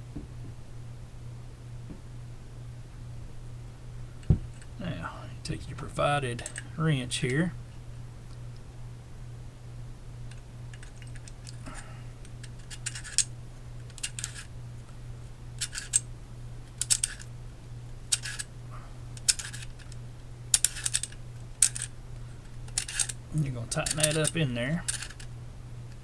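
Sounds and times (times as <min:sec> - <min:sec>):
low electrical hum: 0:00.0 - 0:26.0
wrench clicking and scraping on nut: 0:12.4 - 0:13.3, 0:13.9 - 0:14.5, 0:15.6 - 0:16.0, 0:16.8 - 0:17.3, 0:18.1 - 0:18.5, 0:19.2 - 0:20.0, 0:20.6 - 0:21.9, 0:22.7 - 0:25.3.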